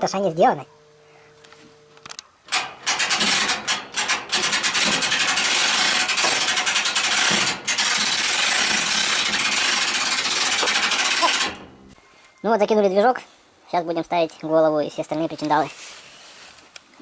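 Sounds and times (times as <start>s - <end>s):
tool scraping and clicking: 2.5s - 12.0s.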